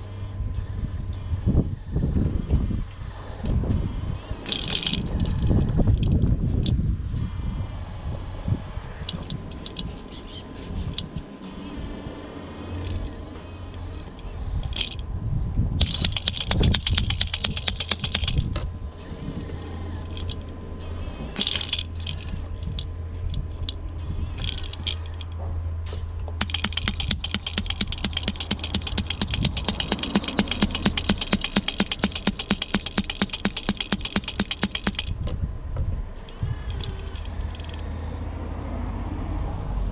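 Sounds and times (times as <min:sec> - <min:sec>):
steady low hum: 0:00.0 - 0:39.9
electric hammer breaking concrete: 0:26.3 - 0:35.2.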